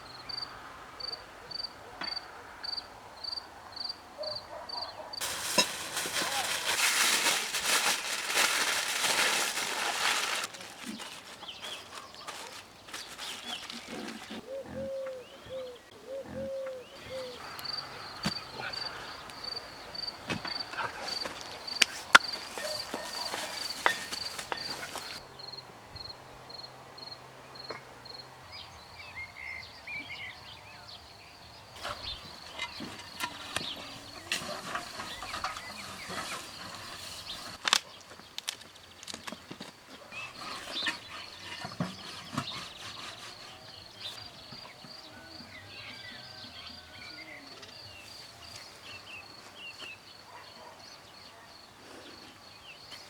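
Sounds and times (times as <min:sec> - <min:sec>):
cricket chirping: 0:00.0 - 0:04.4, 0:14.5 - 0:29.8.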